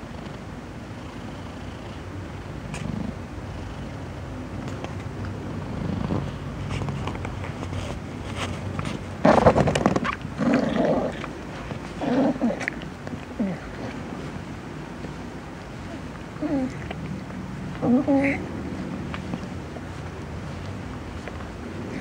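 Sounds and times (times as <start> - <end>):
cat purring: 0.0 - 7.1, 8.6 - 15.1
cat moaning whimpers: 12.0 - 12.8.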